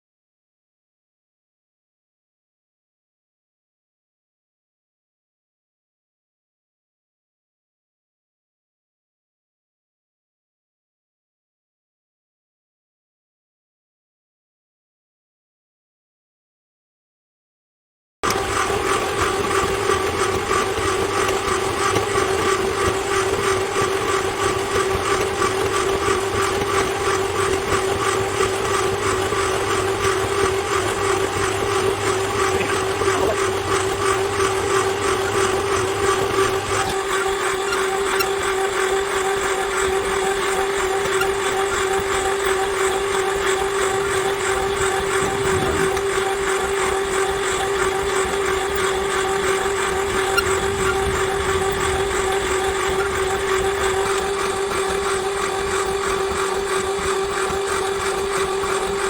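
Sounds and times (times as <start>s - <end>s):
cable stripping machine motor whine: 18.2s - 59.0s.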